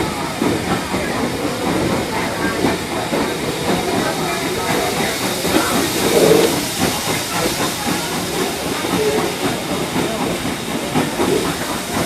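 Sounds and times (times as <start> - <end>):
train wheels on rails: 0.0 - 12.0
air rushing past: 3.2 - 6.9.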